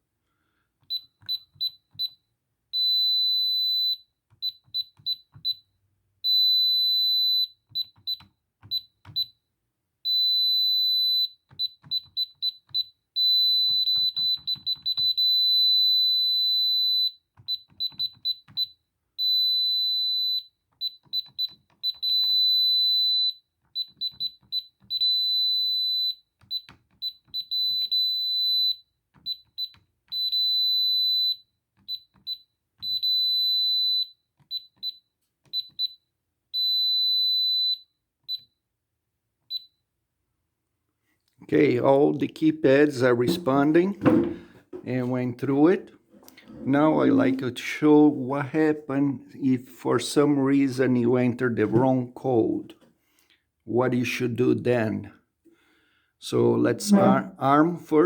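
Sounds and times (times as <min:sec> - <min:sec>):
keypad beeps: 0:11.0 - 0:15.4, 0:56.8 - 0:57.3
steady keypad tones: 0:56.8 - 0:57.3.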